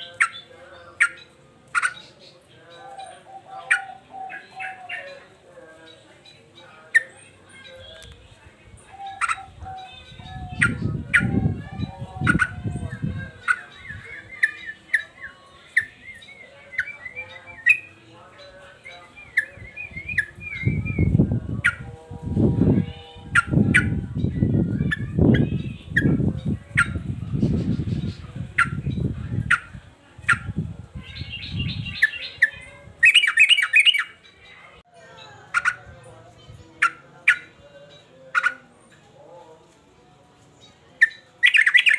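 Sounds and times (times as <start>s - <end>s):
bulbul calling: 0.0s - 5.3s, 8.8s - 34.2s, 41.0s - 41.9s
bird singing chirps and whistles: 19.1s - 34.2s, 41.0s - 41.9s.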